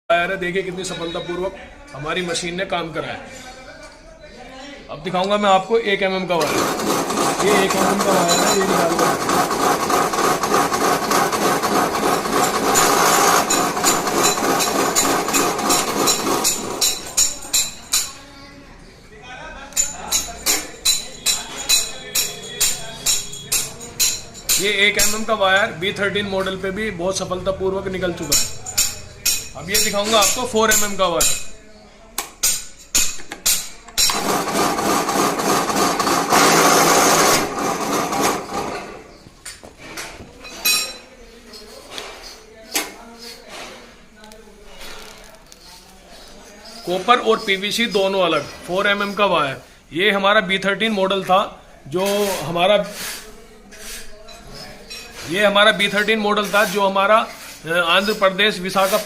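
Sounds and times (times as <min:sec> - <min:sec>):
wire-stripping machine rattling: 0:06.4 - 0:17.2, 0:34.0 - 0:39.0.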